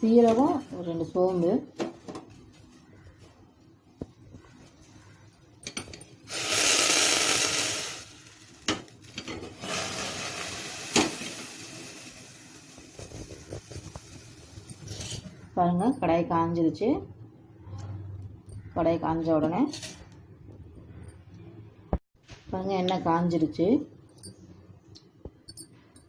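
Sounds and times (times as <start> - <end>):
loud hiss on stove: 6.3 - 15.1.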